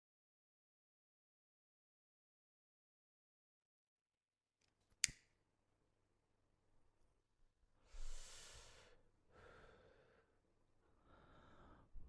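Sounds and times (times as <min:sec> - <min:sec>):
sharp click: 0:05.0 - 0:05.2
soft breath: 0:07.8 - 0:12.0.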